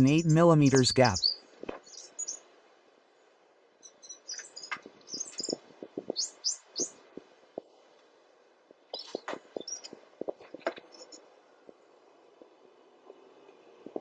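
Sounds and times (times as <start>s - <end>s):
small birds chirping: 0.0s - 2.4s, 3.8s - 7.0s, 9.0s - 10.0s.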